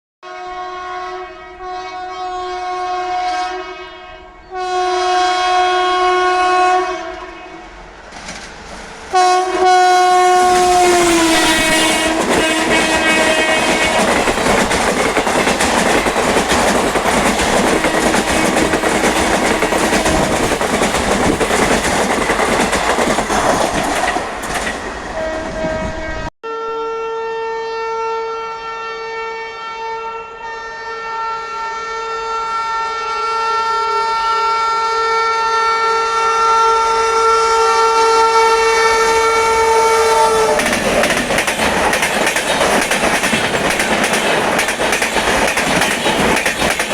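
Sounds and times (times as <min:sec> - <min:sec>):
locomotive twin-tone horn: 0:00.2 - 0:07.8, 0:09.1 - 0:14.6, 0:25.0 - 0:40.9
train coaches rushing past: 0:07.7 - 0:26.3, 0:38.4 - 0:46.9
wheels clattering on rails: 0:10.4 - 0:25.2, 0:40.4 - 0:46.9.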